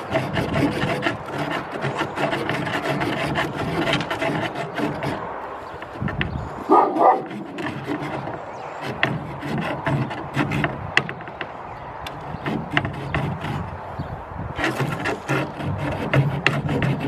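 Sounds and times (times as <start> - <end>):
small saw rasping through wood: 0.0 - 17.0.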